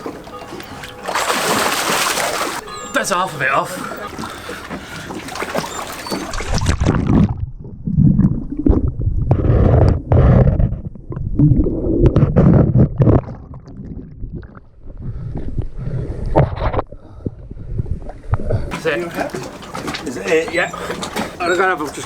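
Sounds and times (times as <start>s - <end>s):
water splashing: 0.0s - 7.6s, 18.7s - 22.0s
underwater gurgling and bubbling: 3.9s - 18.7s.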